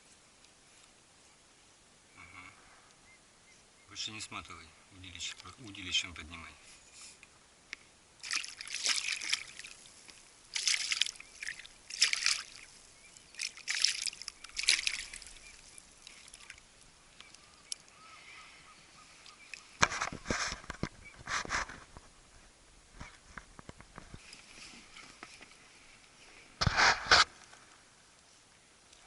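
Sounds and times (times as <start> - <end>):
water splashing near boat: 8.2 - 18.0.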